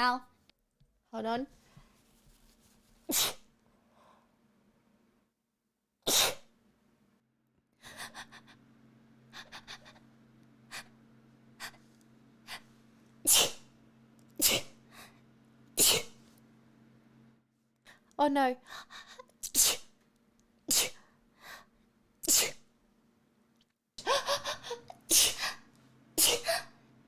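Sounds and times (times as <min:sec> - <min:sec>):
person sneezing: 0:03.1 - 0:03.5, 0:06.0 - 0:06.5, 0:13.3 - 0:13.7, 0:14.4 - 0:14.8, 0:15.8 - 0:16.2, 0:19.4 - 0:20.0, 0:20.7 - 0:21.1, 0:22.2 - 0:22.7, 0:25.1 - 0:25.6, 0:26.2 - 0:26.7.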